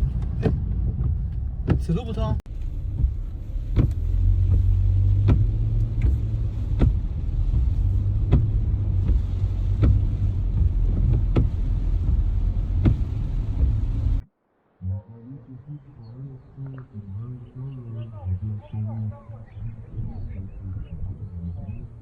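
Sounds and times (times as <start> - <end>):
motor vehicle rumbling: 0.0 - 22.0.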